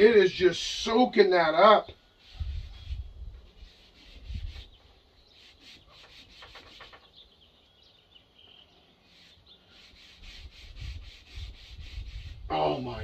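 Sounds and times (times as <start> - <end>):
cloth rubbing wood: 2.2 - 7.1, 9.1 - 13.0.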